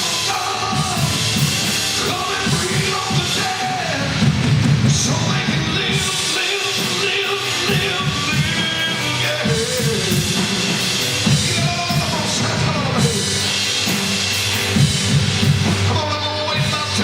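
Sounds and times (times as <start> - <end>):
drum kit beat: 0.0 - 17.0
live band music: 0.0 - 17.0.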